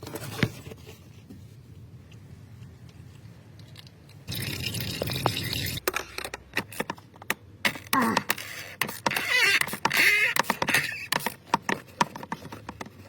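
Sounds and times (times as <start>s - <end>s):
oil pouring and gurgling: 4.3s - 5.8s.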